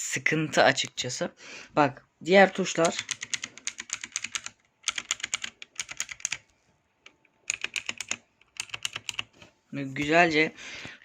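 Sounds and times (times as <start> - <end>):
mechanical keyboard key clicks: 2.8 - 6.4, 7.5 - 9.3.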